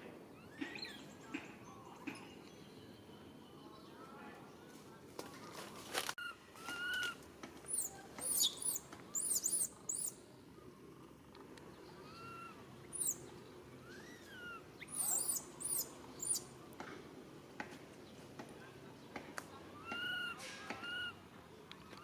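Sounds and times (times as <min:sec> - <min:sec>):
high-pitched chirping calls: 0:07.7 - 0:10.2, 0:12.0 - 0:16.5
short whistled calls: 0:07.7 - 0:10.2, 0:12.4 - 0:13.2, 0:13.9 - 0:16.5.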